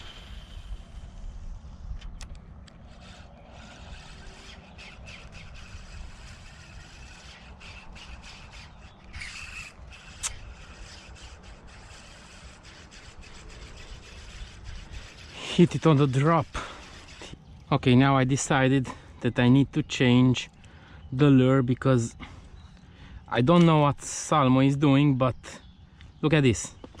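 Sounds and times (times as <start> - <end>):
wind rumbling on microphone: 0.0 - 18.6.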